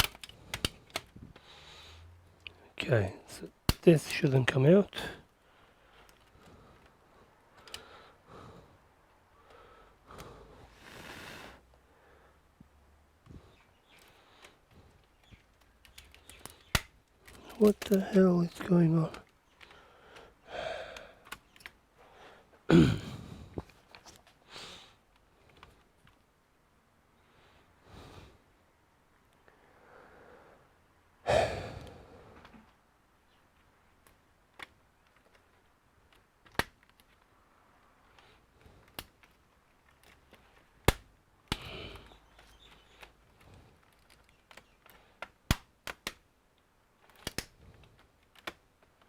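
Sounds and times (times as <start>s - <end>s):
sharp breathy exhale: 9.5s - 12.4s, 31.3s - 32.4s
person sighing loudly: 20.0s - 21.3s, 31.2s - 32.4s.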